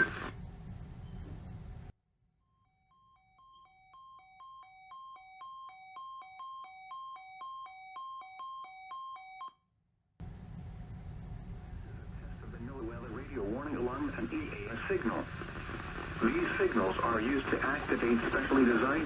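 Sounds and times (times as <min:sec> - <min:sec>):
hissy radio audio: 0:00.0 - 0:00.4, 0:11.7 - 0:19.0.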